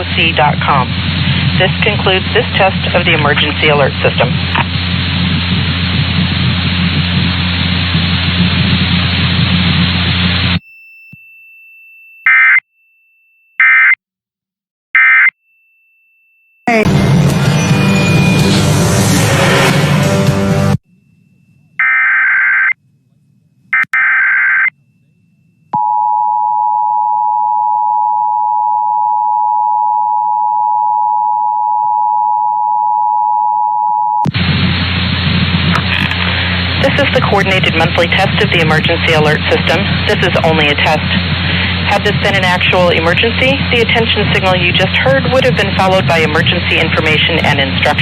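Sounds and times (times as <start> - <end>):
steady electronic alert tone: 16.7 - 19.4.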